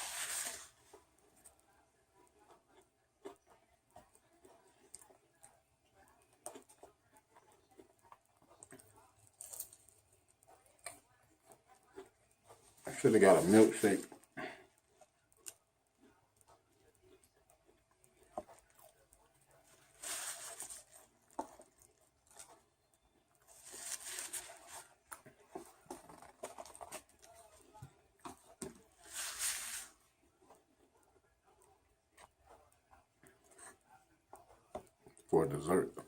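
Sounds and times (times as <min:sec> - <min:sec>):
food packaging rustling: 0:00.0 - 0:01.1, 0:12.7 - 0:14.3, 0:19.6 - 0:22.6, 0:23.4 - 0:30.0.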